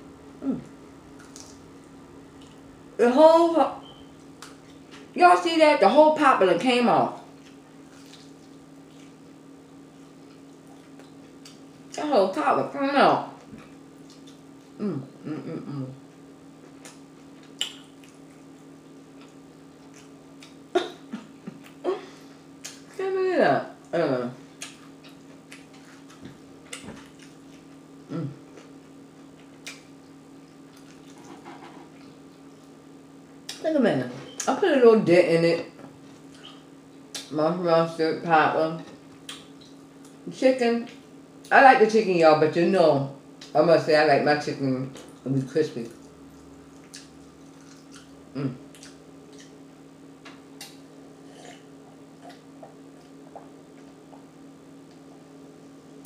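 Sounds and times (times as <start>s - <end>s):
faint hum: 0.0s - 56.0s
wet chewing and lip smacking: 7.3s - 9.2s, 13.6s - 14.8s, 16.7s - 20.7s, 24.6s - 27.8s, 28.5s - 32.8s, 39.1s - 40.2s, 45.9s - 49.6s
mouth smacking and chewing: 13.6s - 14.8s, 24.6s - 27.8s, 39.2s - 40.2s, 45.9s - 49.6s.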